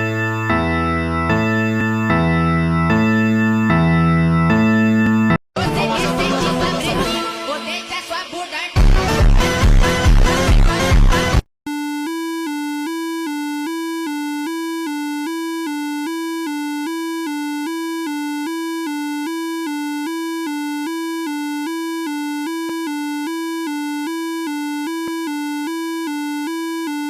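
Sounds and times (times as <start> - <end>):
buzzy two-tone alarm: 0.0 - 5.4, 11.7 - 27.0.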